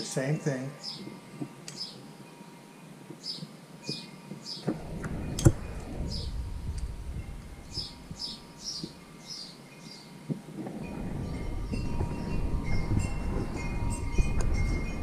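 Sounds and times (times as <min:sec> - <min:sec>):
low rumble: 0:04.7 - 0:09.1, 0:10.7 - 0:15.0
small bird chirping: 0:07.4 - 0:10.1.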